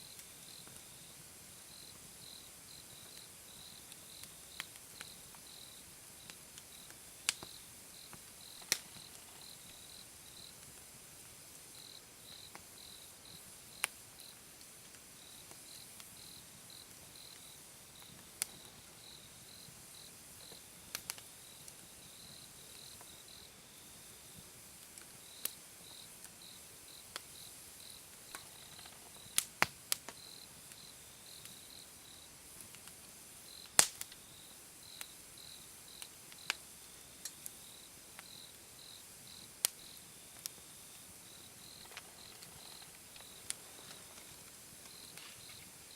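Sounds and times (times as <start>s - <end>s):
wood fire crackling and popping: 0.1s - 1.3s, 1.9s - 23.3s, 24.3s - 34.2s, 35.0s - 45.9s
cricket chirping: 1.7s - 10.6s, 11.7s - 14.4s, 15.2s - 20.6s, 30.1s - 32.3s, 33.5s - 45.9s.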